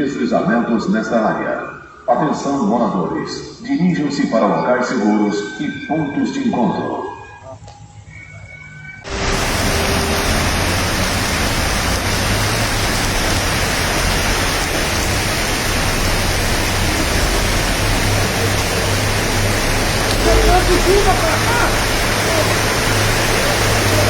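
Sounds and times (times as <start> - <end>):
heavy rain pouring: 9.1 - 24.0.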